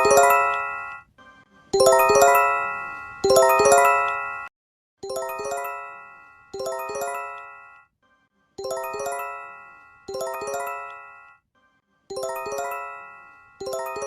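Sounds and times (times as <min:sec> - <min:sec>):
rising bell-like alert chime: 0:01.8 - 0:04.5.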